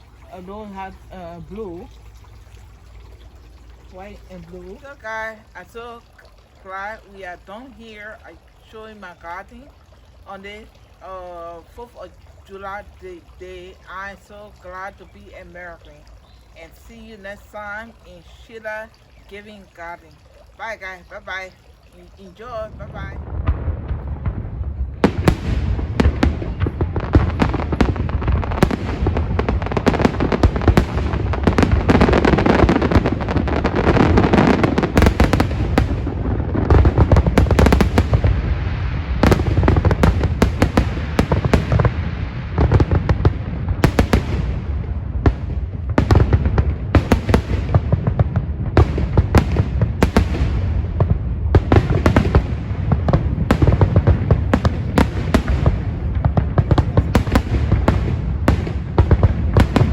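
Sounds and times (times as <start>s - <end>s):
fireworks popping and crackling: 22.3s - 59.9s
low rumble: 22.7s - 59.9s.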